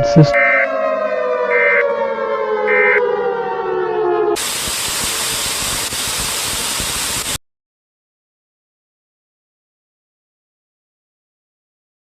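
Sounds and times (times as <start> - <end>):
siren winding down: 0.0 - 6.0
static hiss: 4.4 - 7.4.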